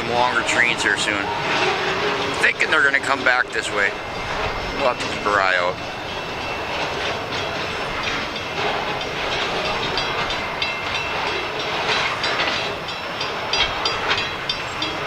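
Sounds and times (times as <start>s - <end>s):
train cars rolling: 0.0s - 15.0s
wheels ringing on rail: 0.0s - 15.0s.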